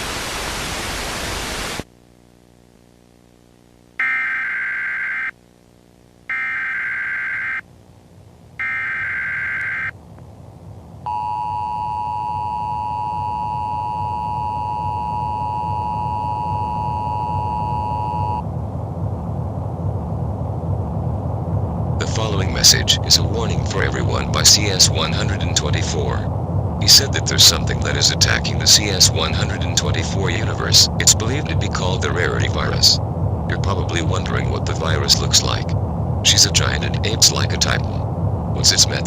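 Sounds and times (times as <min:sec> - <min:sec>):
burst of static: 0:00.0 - 0:02.1, 0:11.1 - 0:18.5, 0:21.6 - 0:39.0
low noise: 0:00.0 - 0:39.0
two-tone attention signal: 0:11.1 - 0:18.4
warbling data bursts: 0:11.1 - 0:18.5.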